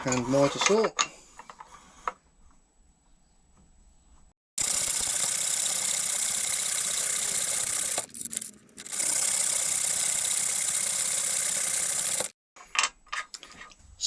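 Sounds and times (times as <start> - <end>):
miter saw cutting: 4.6 - 12.4.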